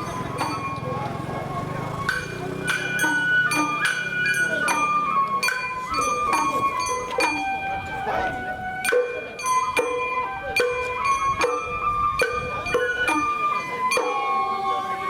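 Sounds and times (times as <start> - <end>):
ringing bell-like strikes: 0.0 - 8.1, 8.8 - 15.0
held melody: 0.0 - 15.0.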